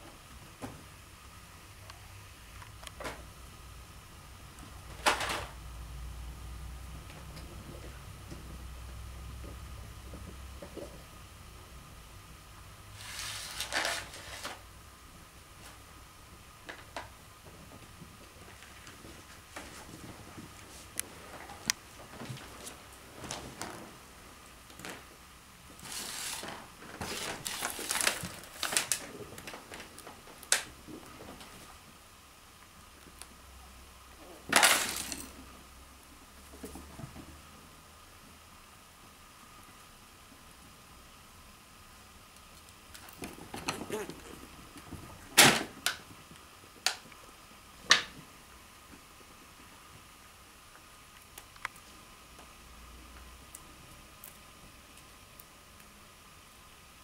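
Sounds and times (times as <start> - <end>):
rustling: 12.9 - 14.7, 16.7 - 31.8, 42.5 - 47.2
chinchillas scrabbling and rustling: 42.9 - 45.3.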